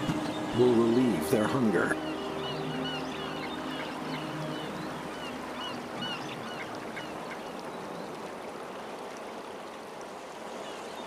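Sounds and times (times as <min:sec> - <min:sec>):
geese honking: 0:00.0 - 0:07.5.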